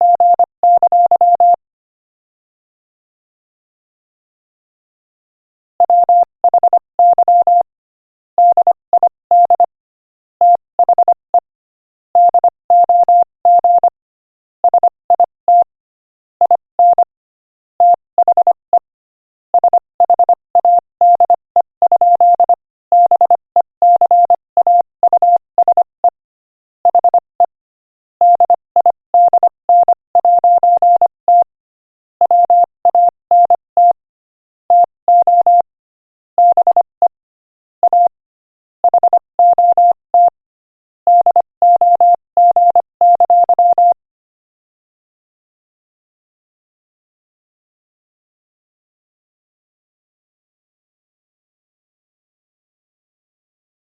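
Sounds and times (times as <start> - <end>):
morse code beeps: 0.0 - 1.6, 5.9 - 7.7, 8.4 - 9.7, 12.2 - 14.0, 16.5 - 17.1, 17.8 - 18.8, 19.6 - 26.2, 26.9 - 27.5, 28.2 - 31.5, 32.2 - 34.0, 34.7 - 35.7, 36.4 - 37.2, 37.8 - 38.2, 38.8 - 40.4, 41.1 - 44.0.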